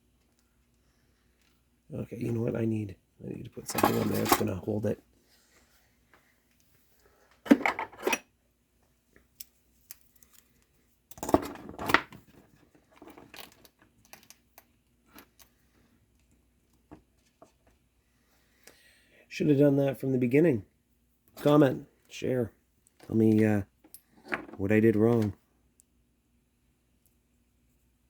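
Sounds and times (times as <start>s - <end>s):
tools clattering on workbench: 3.7s - 4.6s, 7.5s - 8.2s, 24.2s - 25.4s.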